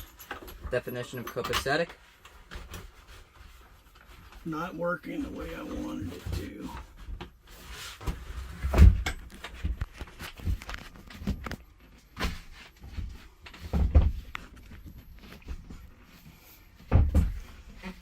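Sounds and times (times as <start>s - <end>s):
knocks and rattles on bunk: 0.0s - 4.4s, 5.8s - 17.8s.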